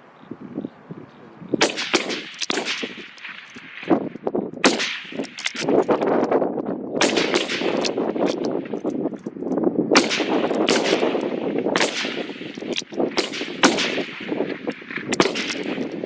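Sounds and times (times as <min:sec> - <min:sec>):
rifle shots with echo: 0:01.6 - 0:06.3, 0:07.0 - 0:08.9, 0:09.9 - 0:16.0.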